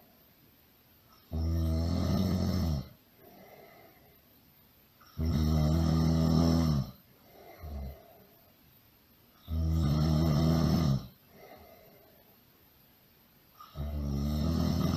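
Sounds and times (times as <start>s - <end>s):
quiet breaths: 0.0s - 14.9s
loud low snoring: 1.3s - 3.0s, 5.1s - 7.0s, 9.4s - 11.2s, 13.6s - 14.9s.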